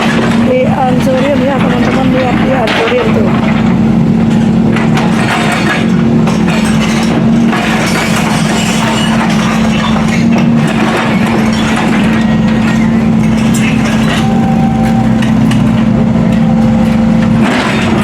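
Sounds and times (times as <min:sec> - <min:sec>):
clattering of broken road material: 0:00.0 - 0:18.0
heavy machine engine running: 0:00.0 - 0:18.0.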